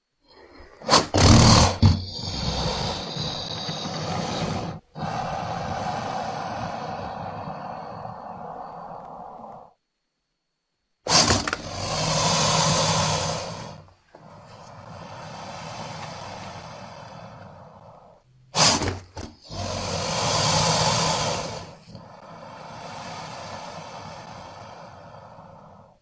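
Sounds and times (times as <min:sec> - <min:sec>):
crocodile hissing: 0:00.0 - 0:09.8, 0:11.1 - 0:26.0.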